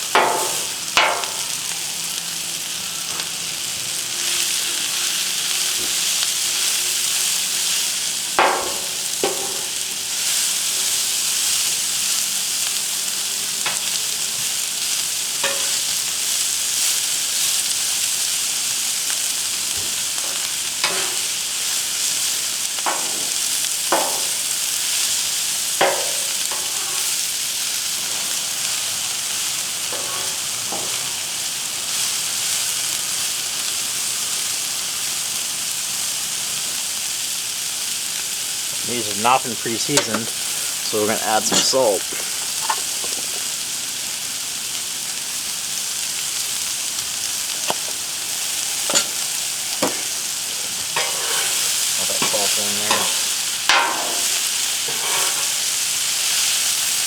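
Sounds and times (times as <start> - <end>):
vegetables sizzling on a griddle: 0.0 - 57.0
metal spatula scraping griddle: 8.4 - 11.0, 15.4 - 16.1, 19.7 - 21.6, 22.8 - 25.0, 25.8 - 27.3, 29.8 - 31.2, 38.8 - 43.4, 47.6 - 55.9.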